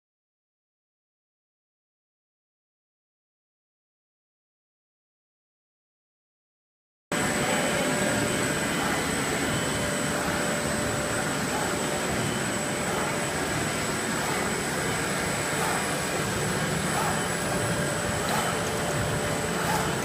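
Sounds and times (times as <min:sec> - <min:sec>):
machine hum and hiss: 0:07.1 - 0:20.0.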